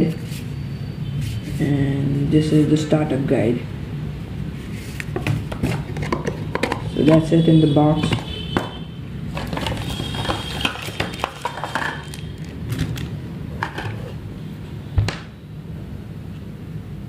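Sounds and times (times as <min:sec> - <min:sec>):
small objects clicking and tapping: 0:09.4 - 0:13.0.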